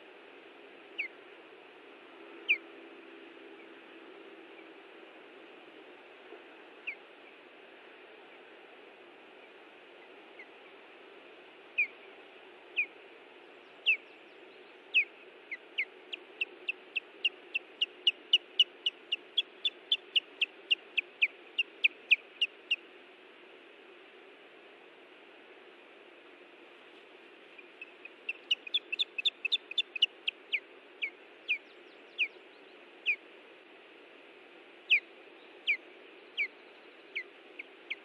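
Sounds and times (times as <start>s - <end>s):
steady hiss: 0.0s - 38.0s
osprey alarm calls: 13.8s - 14.0s, 14.9s - 22.8s, 27.6s - 32.4s, 34.9s - 35.8s.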